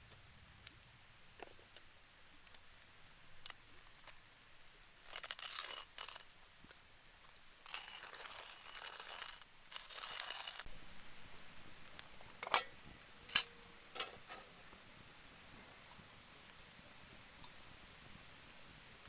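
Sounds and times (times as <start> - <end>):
faint hiss: 0.0 - 19.0
crinkling and rustling: 5.0 - 10.7.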